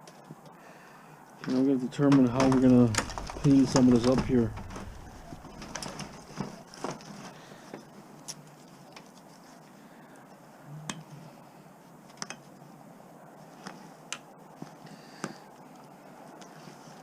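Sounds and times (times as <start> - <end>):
low steady hiss: 0.0 - 13.6.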